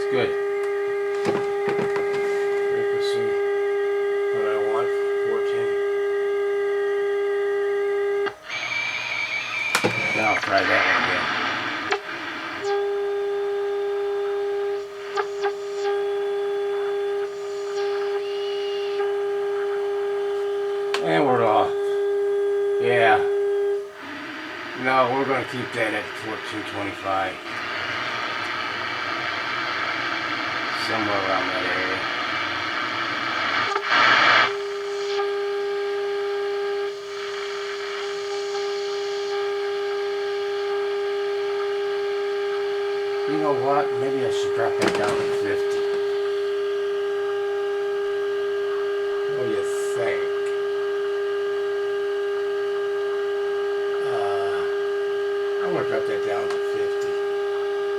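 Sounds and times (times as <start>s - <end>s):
radio test tone: 0.0s - 57.9s
tuning clicks: 0.3s - 4.2s, 7.4s - 22.1s.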